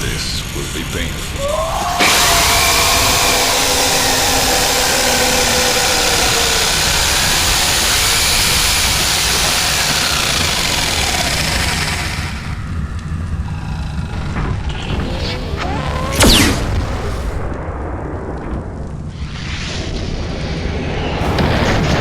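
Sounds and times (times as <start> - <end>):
loud rushing noise: 1.4 - 12.7.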